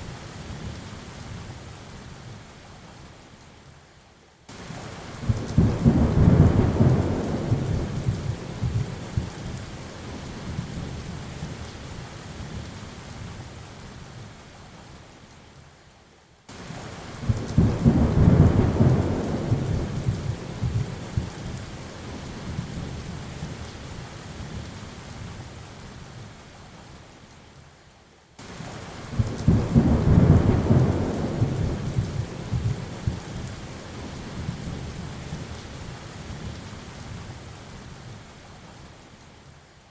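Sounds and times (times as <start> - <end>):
steady rain: 0.0 - 39.9
rolling thunder: 17.2 - 21.4, 29.1 - 33.3.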